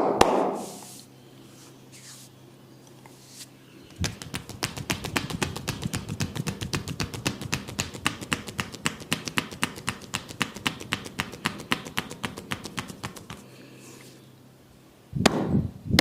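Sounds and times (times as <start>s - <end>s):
hands tapping on head: 3.9s - 13.5s.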